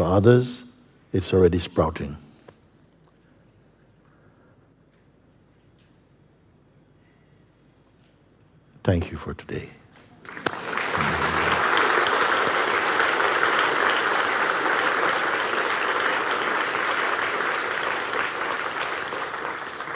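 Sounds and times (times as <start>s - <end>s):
audience applause: 10.2s - 19.9s.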